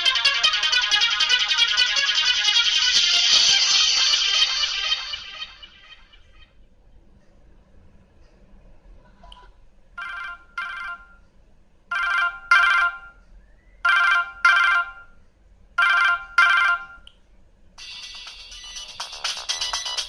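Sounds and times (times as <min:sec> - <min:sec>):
phone ringtone imitating telephone bell: 0:13.9 - 0:15.1, 0:15.8 - 0:17.0.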